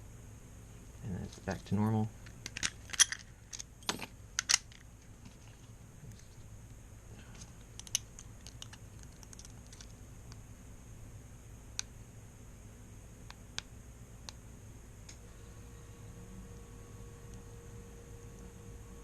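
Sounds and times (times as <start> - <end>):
padlock clicking and rattling: 2.5 - 3.7, 4.4 - 4.8, 7.8 - 9.9.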